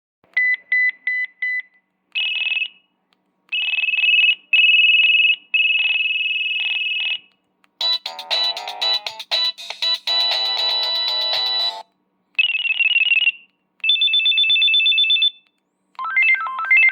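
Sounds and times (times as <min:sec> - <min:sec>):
phone electronic alert tone: 0:07.8 - 0:11.8, 0:16.0 - 0:16.9.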